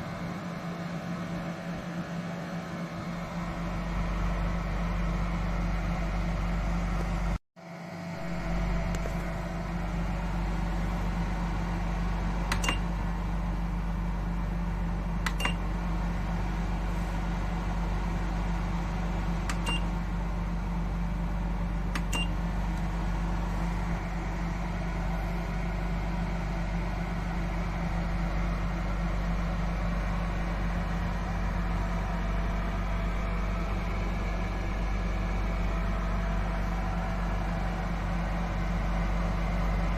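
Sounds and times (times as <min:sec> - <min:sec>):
fan heater humming: 0:00.0 - 0:39.9
short beeps: 0:22.1 - 0:22.4.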